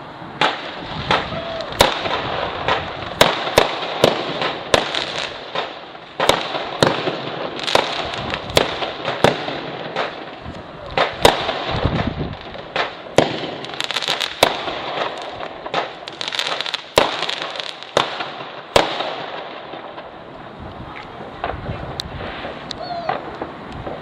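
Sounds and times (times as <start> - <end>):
fireworks bangs: 0.0 - 24.0.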